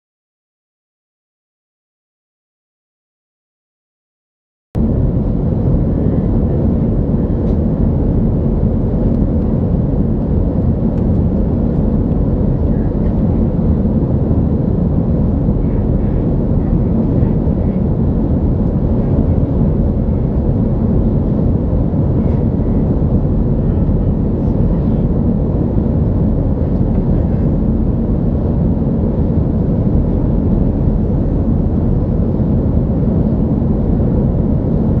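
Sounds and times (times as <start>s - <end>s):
airliner cabin noise: 4.8s - 35.0s.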